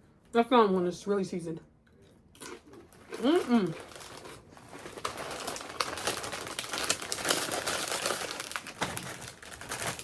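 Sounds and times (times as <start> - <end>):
snack bag rustling: 2.4 - 10.0.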